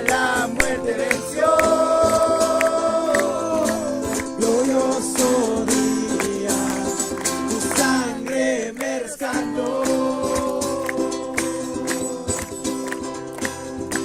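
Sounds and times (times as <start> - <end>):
group singing a worship song: 0.0 - 12.6
strummed acoustic guitar: 0.0 - 14.0.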